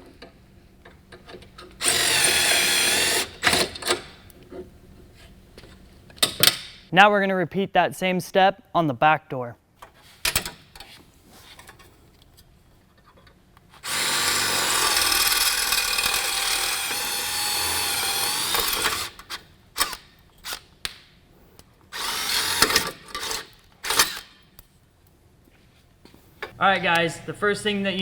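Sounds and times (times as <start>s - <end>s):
power drill drilling: 1.8s - 3.6s, 13.8s - 20.0s, 22.0s - 24.2s.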